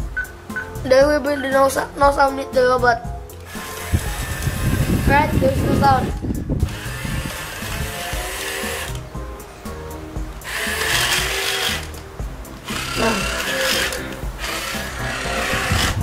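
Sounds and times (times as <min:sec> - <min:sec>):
small electric motors whirring: 0:03.4 - 0:09.1, 0:10.4 - 0:12.0, 0:12.6 - 0:16.0.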